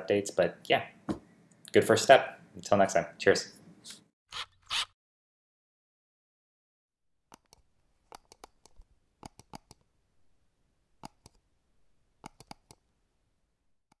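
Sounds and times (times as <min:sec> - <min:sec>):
sharp clicks: 0:12.2 - 0:12.8.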